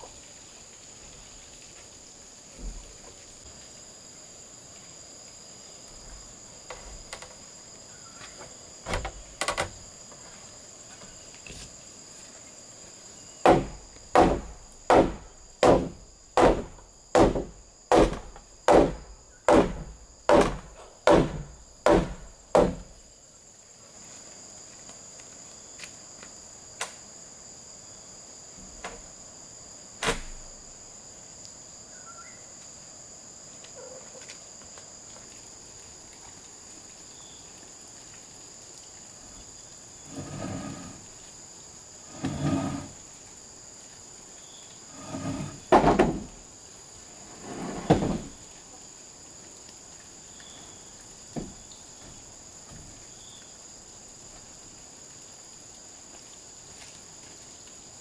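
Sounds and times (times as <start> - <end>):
insects chirring: 0.0 - 58.0
hard strikes on wood: 13.4 - 23.0.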